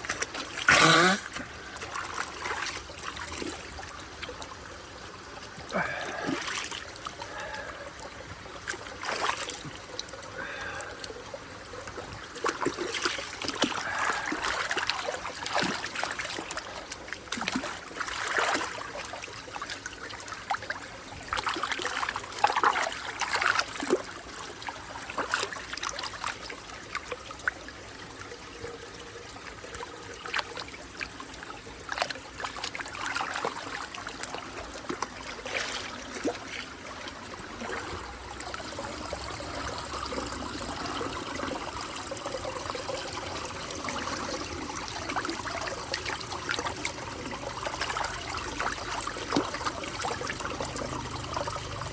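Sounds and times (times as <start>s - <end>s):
water trickling and splashing: 0.0s - 51.9s
running water hiss: 0.5s - 2.0s.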